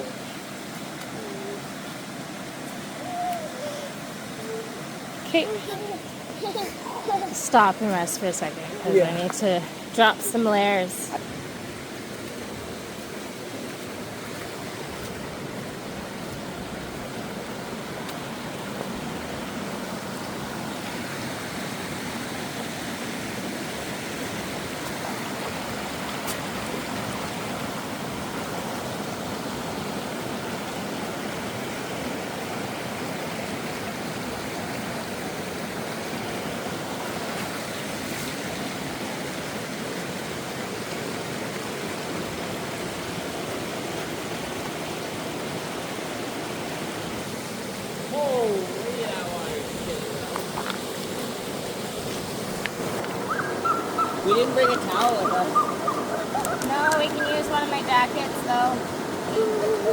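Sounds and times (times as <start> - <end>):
rushing water: 0.0 - 59.9.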